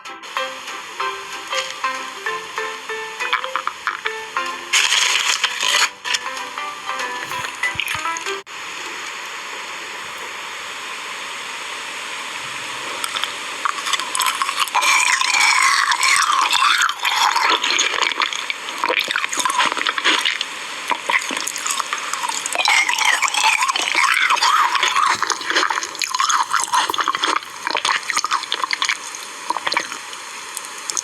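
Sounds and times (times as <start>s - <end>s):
steady hiss: 0.1s - 31.0s
wet jelly squelching: 7.2s - 8.4s, 10.0s - 18.0s, 22.7s - 30.0s.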